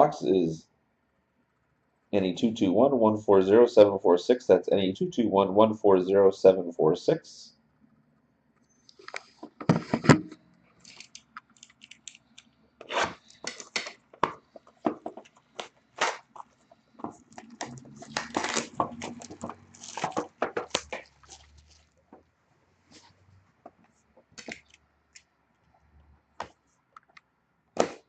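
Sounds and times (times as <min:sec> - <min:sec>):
handling rustles and clicks: 0:08.9 - 0:22.2
wrapping tearing and crinkling: 0:17.2 - 0:22.0.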